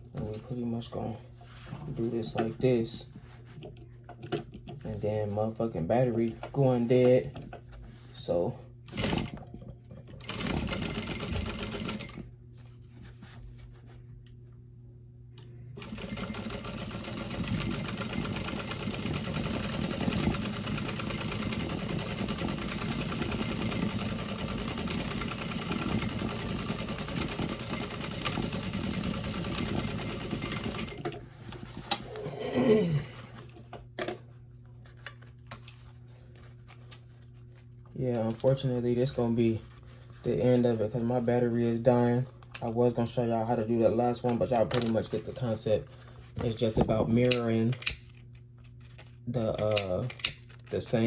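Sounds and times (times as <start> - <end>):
sewing machine stitching: 8.9 - 9.4, 10.2 - 12.2, 15.8 - 31.2.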